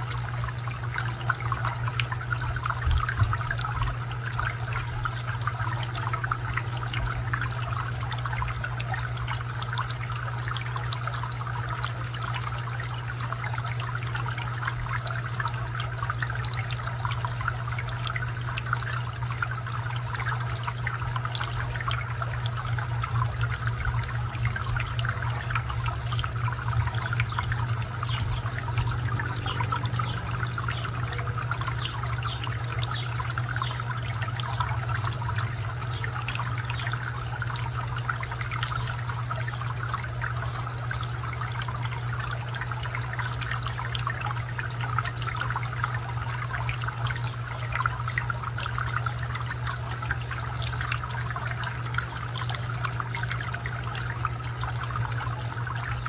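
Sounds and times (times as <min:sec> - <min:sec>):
fountain water trickling: 0:00.0 - 0:56.0
low hum: 0:22.6 - 0:37.3.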